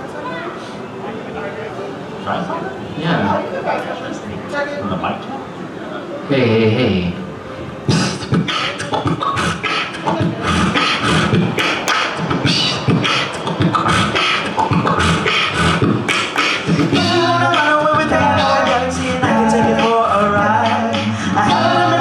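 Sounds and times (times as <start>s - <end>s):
sung harmony voices: 6.0s - 22.0s
beatboxing into a microphone: 7.9s - 22.0s.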